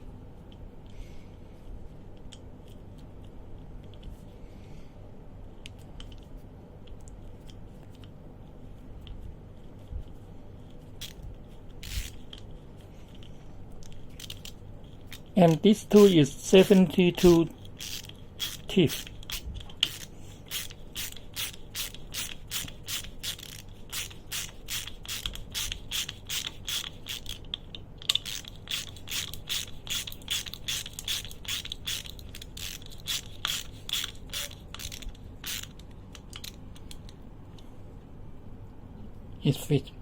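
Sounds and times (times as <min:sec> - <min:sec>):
ratchet screwdriver clicking: 0:11.8 - 0:12.4, 0:13.8 - 0:37.2.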